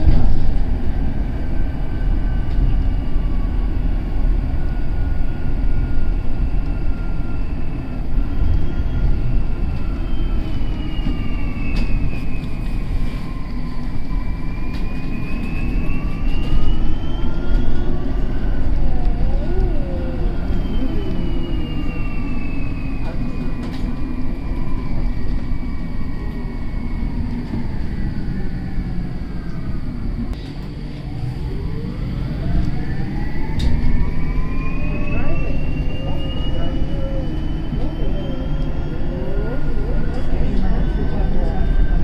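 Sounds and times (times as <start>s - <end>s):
bus engine low rumble: 0.0s - 42.0s.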